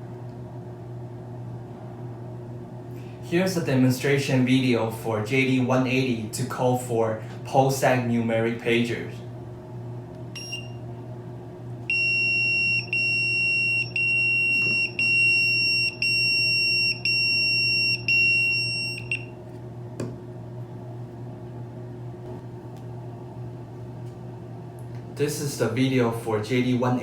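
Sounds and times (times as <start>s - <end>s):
steady low hum: 0.0s - 27.0s
pager high-pitched beeps: 11.9s - 19.3s.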